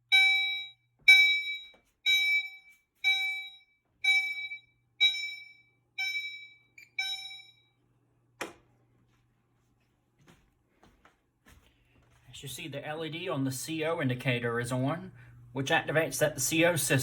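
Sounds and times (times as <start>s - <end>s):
alarm chime dings: 0.1s - 7.8s.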